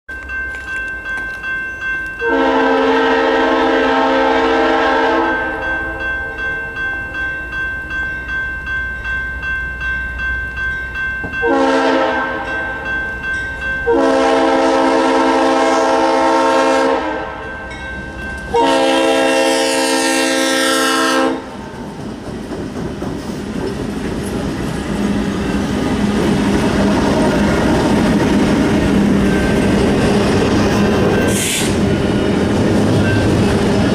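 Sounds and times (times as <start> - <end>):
locomotive air horn blasts: 2.2 - 6.0, 11.4 - 12.7, 13.8 - 17.4, 18.5 - 21.6, 31.3 - 31.8
train rumble: 10.6 - 33.9
wheels clacking over rail joints: 21.8 - 31.5.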